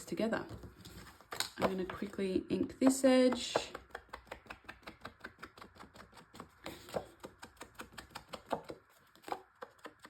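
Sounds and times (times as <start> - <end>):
ink pad tapping on paper: 2.7 - 5.8, 6.7 - 10.0.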